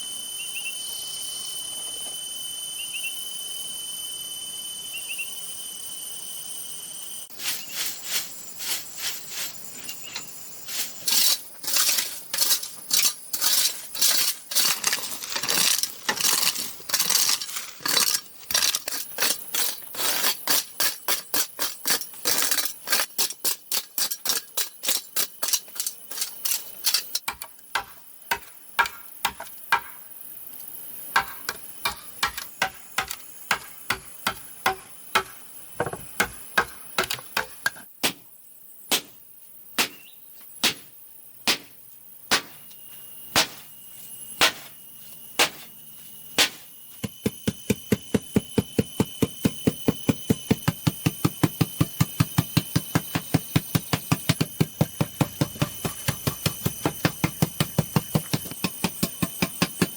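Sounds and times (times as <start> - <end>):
high insect shrill: 0.0 - 21.1
hand tool striking bamboo: 11.1 - 30.0, 31.2 - 38.2, 38.9 - 39.2, 39.8 - 40.9, 41.5 - 42.7, 43.3 - 43.7, 44.4 - 44.8, 45.4 - 45.7, 46.4 - 59.9.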